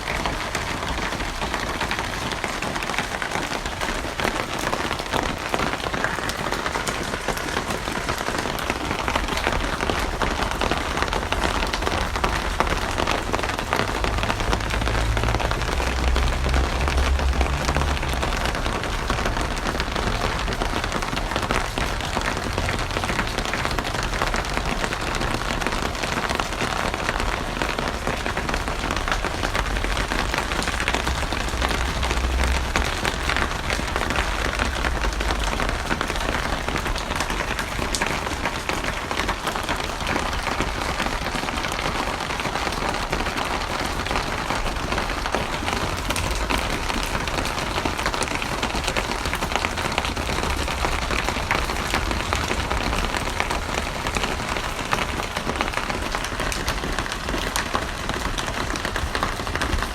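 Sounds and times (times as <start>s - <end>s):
heavy rain on hard surface: 0.0s - 59.9s.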